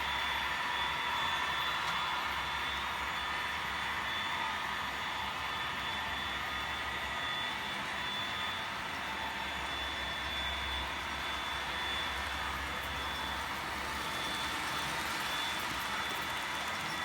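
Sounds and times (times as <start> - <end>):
model train engine drone and whine: 0.0 - 17.0.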